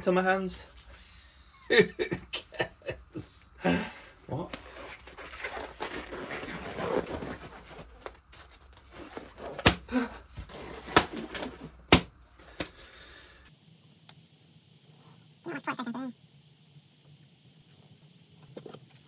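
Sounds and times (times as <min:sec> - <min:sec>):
rustling handling noise: 0:04.2 - 0:13.0.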